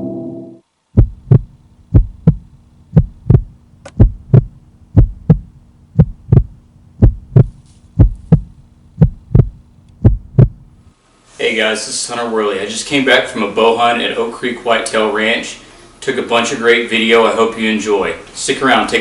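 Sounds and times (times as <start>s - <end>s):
heartbeat thumps: 1.0s - 10.9s
steady low hum: 1.0s - 10.9s.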